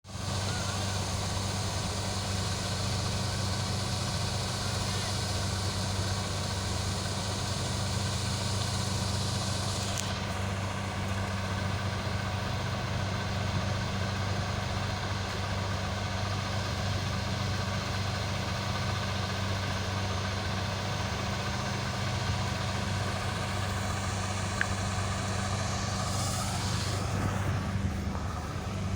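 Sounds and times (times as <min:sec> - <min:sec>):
high hiss: 0:21.3 - 0:28.9
short rising whine: 0:22.3 - 0:28.9
cutter machine humming: 0:22.4 - 0:28.9.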